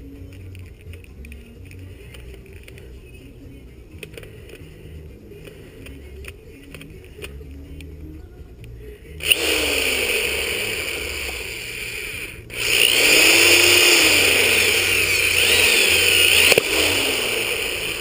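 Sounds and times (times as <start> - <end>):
drill bit squealing: 9.2 - 18.0
power drill boring into metal: 9.2 - 18.0.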